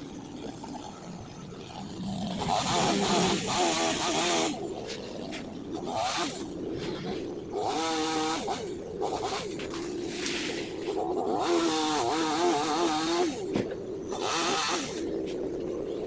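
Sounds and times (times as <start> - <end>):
chainsaw engine revving: 1.8 - 5.2, 5.8 - 6.6, 7.5 - 9.5, 11.0 - 13.5, 14.1 - 15.1.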